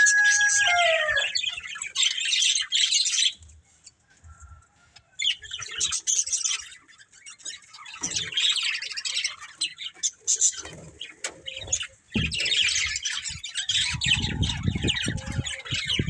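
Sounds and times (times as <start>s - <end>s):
long descending bird call: 0.0s - 1.4s
budgies chattering and chirping: 0.0s - 3.9s, 5.2s - 16.0s.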